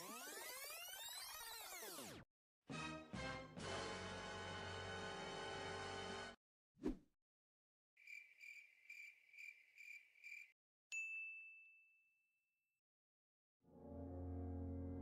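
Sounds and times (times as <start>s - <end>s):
cricket chirping: 8.0s - 10.6s.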